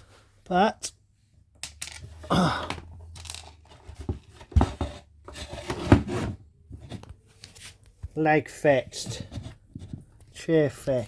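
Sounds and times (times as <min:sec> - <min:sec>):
short grunt: 0:02.2 - 0:02.8
wooden chair scraping and rustling: 0:03.6 - 0:07.1.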